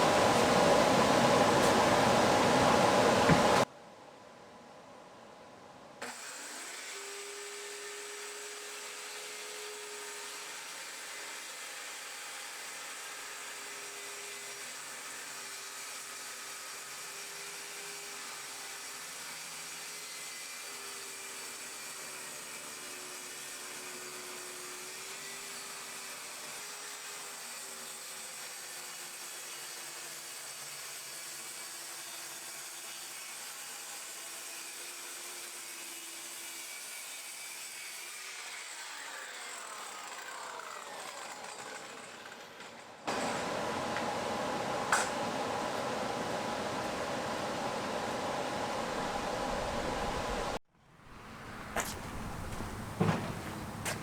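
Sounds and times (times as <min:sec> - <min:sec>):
machine hum with hiss: 0:00.0 - 0:03.7, 0:43.1 - 0:50.6.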